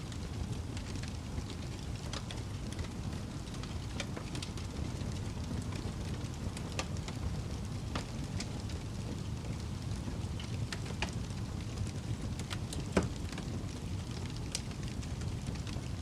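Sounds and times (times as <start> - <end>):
fire crackling and popping: 0.0 - 16.0
wood fire rumbling: 0.0 - 16.0.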